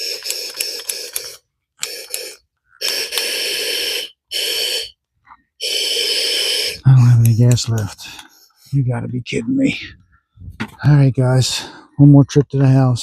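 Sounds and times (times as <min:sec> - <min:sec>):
gas torch valve hiss: 0:00.0 - 0:05.0, 0:05.6 - 0:07.7.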